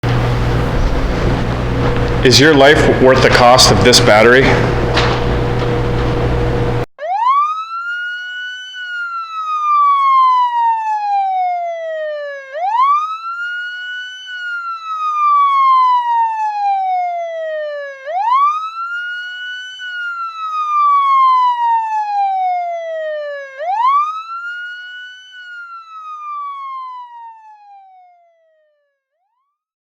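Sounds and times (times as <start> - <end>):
emergency vehicle siren wailing: 0.0 - 28.7.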